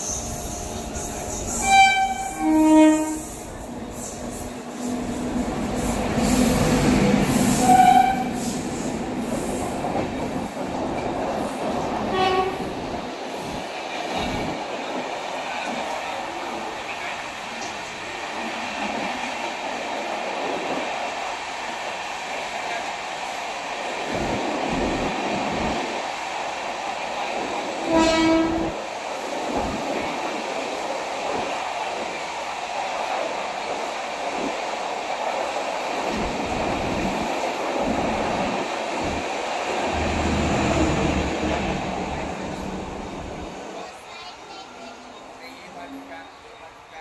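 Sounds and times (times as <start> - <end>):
train rumbling on rails: 0.0 - 47.0
train horn blast: 1.6 - 3.3, 7.6 - 8.4, 12.1 - 12.7, 27.9 - 28.7.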